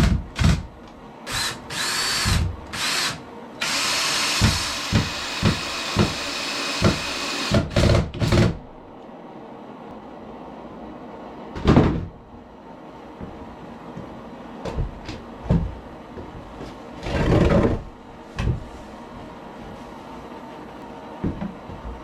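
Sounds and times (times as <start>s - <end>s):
wooden framing knocks and thumps: 11.6s - 12.2s.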